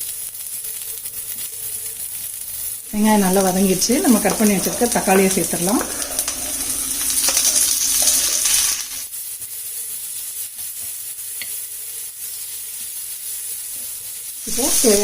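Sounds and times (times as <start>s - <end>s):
vegetables sizzling in oil: 0.0s - 15.0s
stirring scrape and clack: 3.0s - 9.0s.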